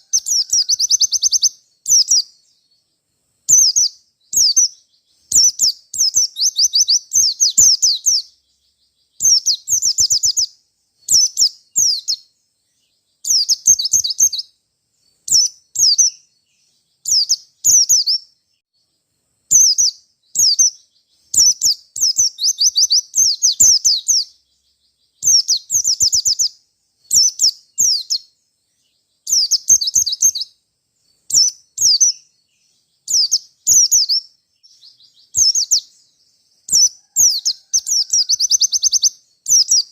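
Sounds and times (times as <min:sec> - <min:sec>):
bird singing rapid chattering notes: 0:00.0 - 0:18.7, 0:19.5 - 0:39.9.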